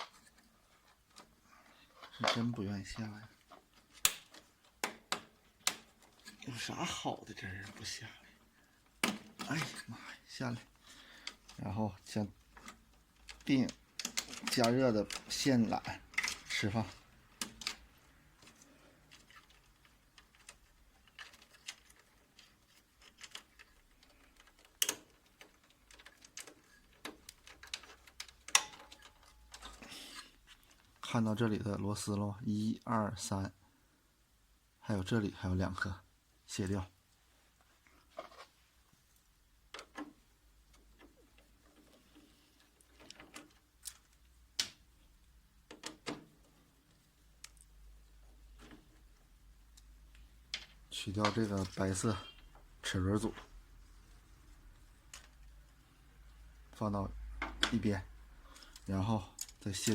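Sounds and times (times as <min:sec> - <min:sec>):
clicks and taps on plastic parts: 0:03.8 - 0:06.4, 0:08.9 - 0:09.5, 0:12.4 - 0:29.8, 0:39.7 - 0:44.9, 0:45.6 - 0:46.5, 0:57.3 - 0:57.9.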